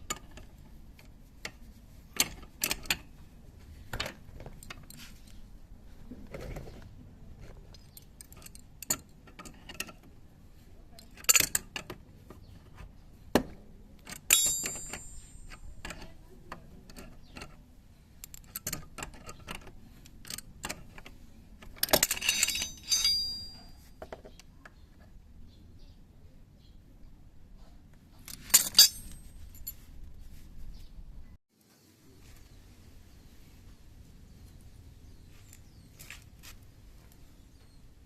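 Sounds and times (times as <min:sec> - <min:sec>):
metal tools clicking and clinking: 0:14.0 - 0:16.2, 0:18.2 - 0:23.9, 0:28.3 - 0:29.7
ringing metallic clanks: 0:14.2 - 0:15.8, 0:21.9 - 0:23.8, 0:28.4 - 0:29.3.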